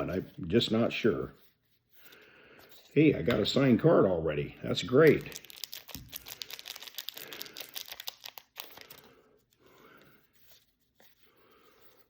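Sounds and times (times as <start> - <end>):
foil wrapper crinkling: 5.0 - 9.2.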